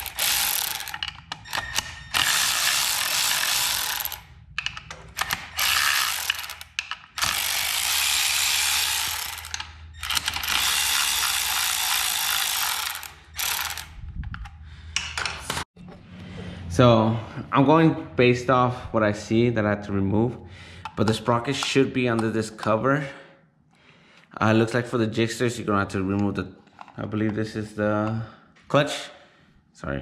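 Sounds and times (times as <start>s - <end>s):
ratchet wrench clicking: 0.0s - 13.9s.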